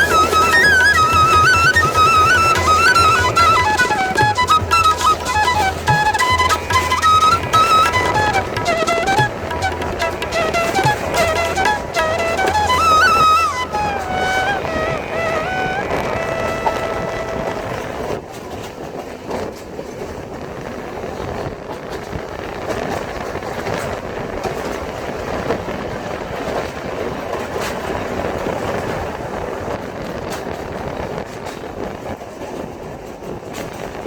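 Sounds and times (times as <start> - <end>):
wheels clacking over track: 0.0 - 20.3.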